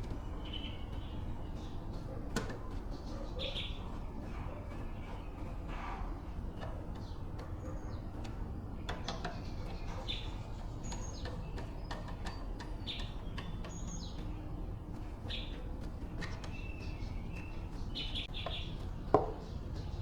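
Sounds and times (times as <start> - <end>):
low background hum: 0.0 - 20.0
small birds chirping: 0.0 - 20.0.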